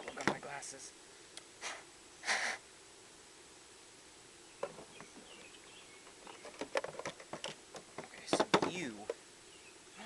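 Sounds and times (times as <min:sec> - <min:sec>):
person sniffing through nose: 0:01.6 - 0:02.6.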